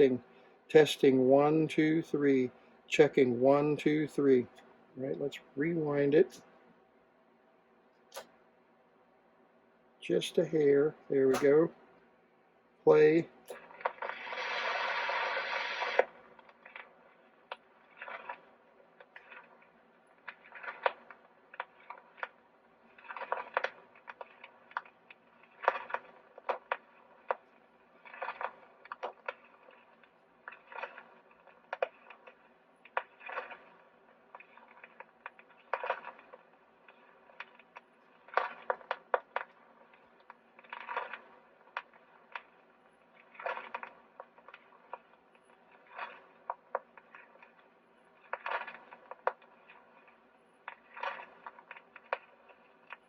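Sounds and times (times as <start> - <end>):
stylus clicks and crackle: 0.0 - 7.0, 7.7 - 8.6, 10.1 - 53.0
scratchy burst from disc: 12.9 - 53.0.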